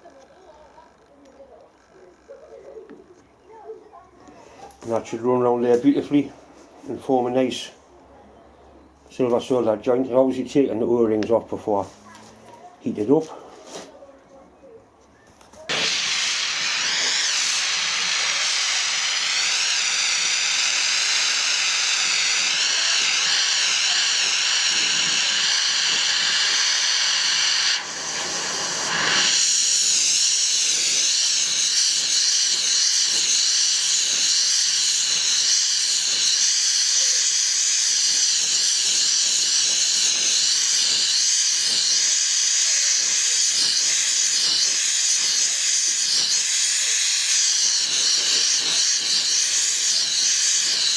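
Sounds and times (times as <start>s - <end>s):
gas torch flame hissing: 15.7s - 50.9s.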